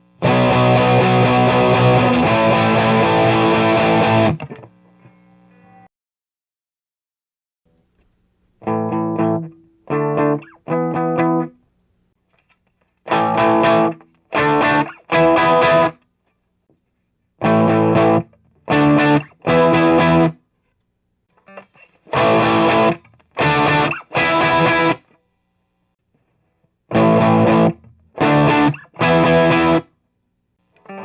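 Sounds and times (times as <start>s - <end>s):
distorted electric guitar chord stabs: 0.0s - 4.8s, 22.1s - 25.0s, 26.9s - 29.8s.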